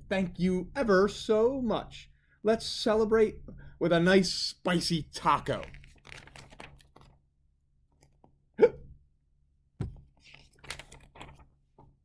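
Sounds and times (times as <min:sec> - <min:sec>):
man hiccuping: 0:08.6 - 0:08.9.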